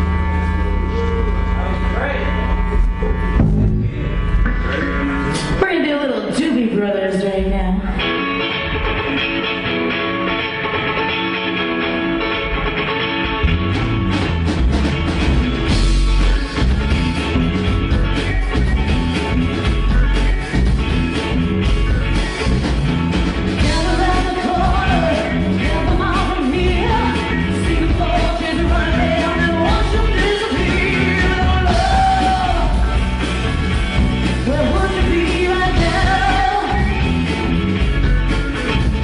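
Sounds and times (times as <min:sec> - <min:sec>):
rock band playing: 0:00.0 - 0:39.0
lead vocal singing: 0:23.6 - 0:33.0.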